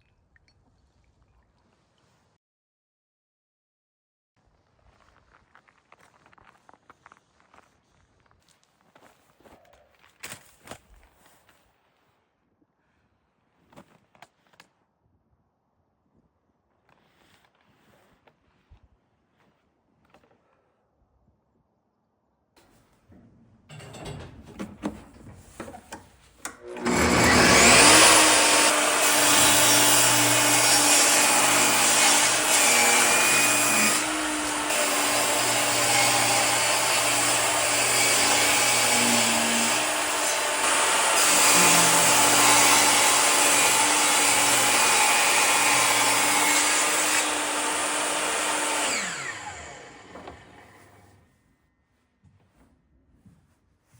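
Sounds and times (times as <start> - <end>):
woodworking power tool whining: 23.7 - 51.3.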